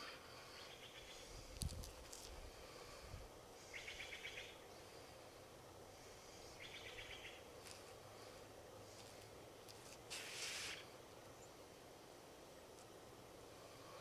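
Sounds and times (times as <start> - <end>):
faint outdoor background: 0.0 - 14.0
bird chirping trill: 3.7 - 4.7, 6.6 - 7.5.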